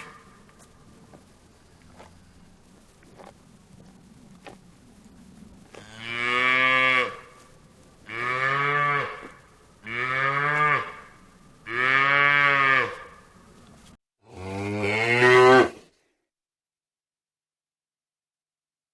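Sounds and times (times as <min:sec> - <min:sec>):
cow mooing: 0:05.7 - 0:07.3, 0:08.1 - 0:13.2, 0:14.3 - 0:15.8.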